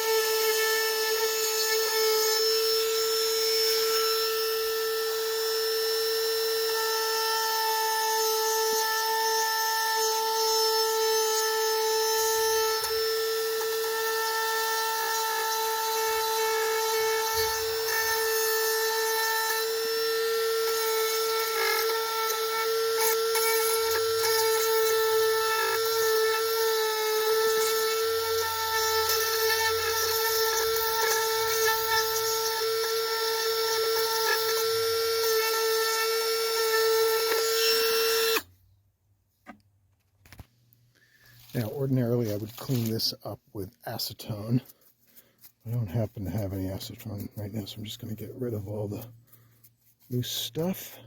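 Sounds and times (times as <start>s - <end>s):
rotary tool grinding fiberglass: 0.0s - 38.5s.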